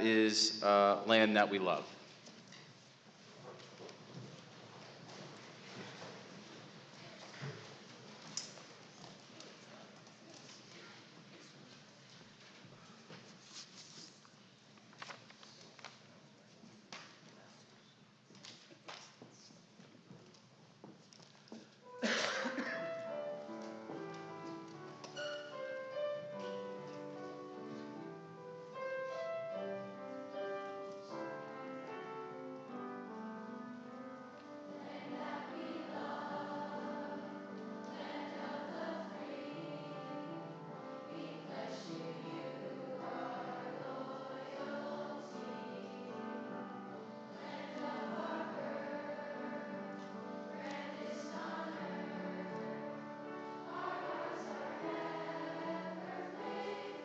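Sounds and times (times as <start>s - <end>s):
school chorus singing: 34.6s - 57.0s.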